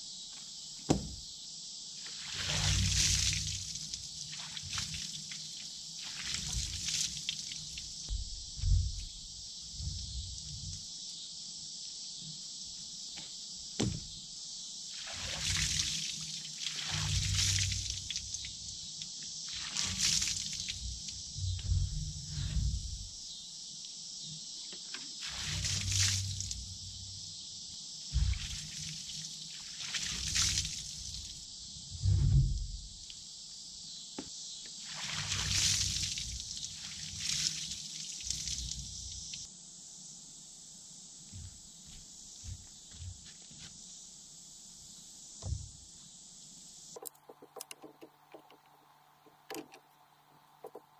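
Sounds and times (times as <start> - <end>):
steady high hiss: 0.0 - 50.9
boards thumping: 0.9 - 1.2, 13.8 - 14.2, 45.4 - 45.8
single knock: 0.9 - 1.2, 13.8 - 14.1
water spray hissing: 2.0 - 10.9, 14.9 - 18.8, 19.4 - 23.2, 25.2 - 27.1, 28.2 - 31.4.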